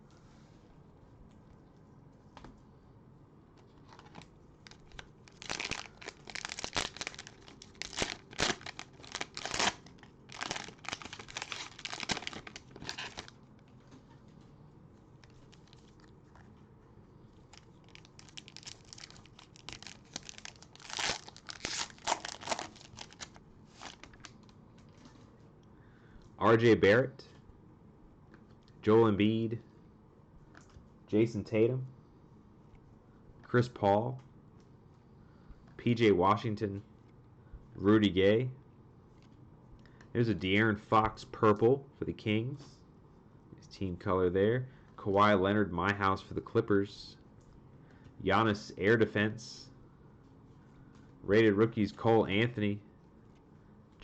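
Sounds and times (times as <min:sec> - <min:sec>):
cellophane wrapper tearing and crinkling: 0:04.0 - 0:13.4, 0:15.2 - 0:16.1, 0:17.5 - 0:24.5.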